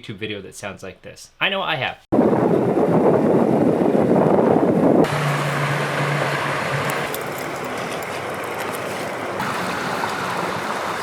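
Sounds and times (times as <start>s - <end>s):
wind buffeting microphone: 2.1s - 11.0s.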